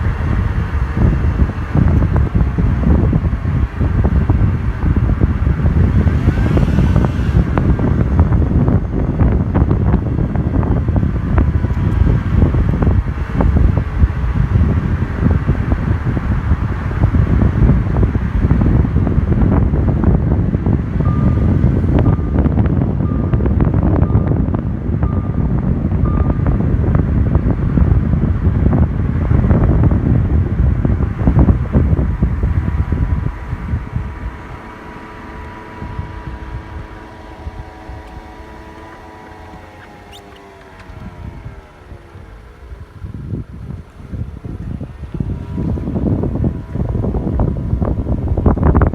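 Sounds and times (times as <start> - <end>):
car whine: 0.0 - 48.9
road and wind rumble: 0.0 - 48.9
short beeps: 21.1 - 26.6.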